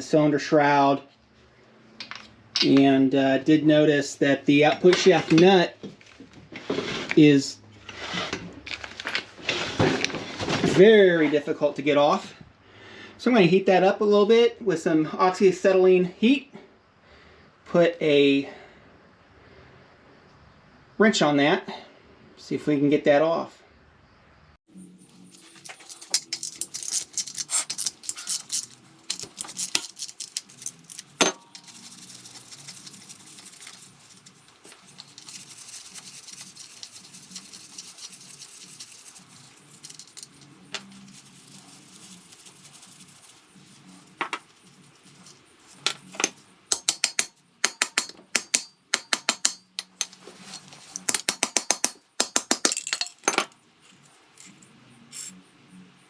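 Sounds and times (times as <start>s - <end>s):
hand tools clinking on metal: 25.2s - 38.3s, 39.1s - 41.2s, 45.1s - 55.4s
wrench clicking: 46.7s - 52.9s.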